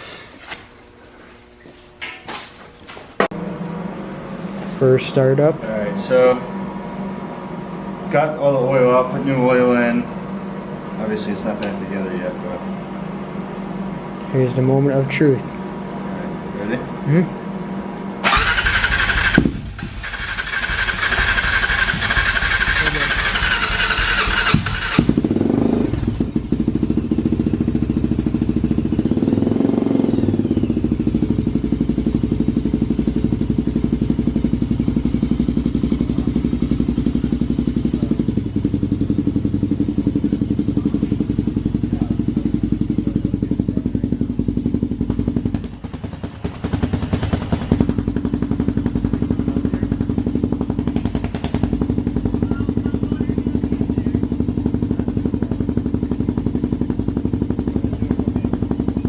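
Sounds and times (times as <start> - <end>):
engine idling and revving: 3.3 - 59.0.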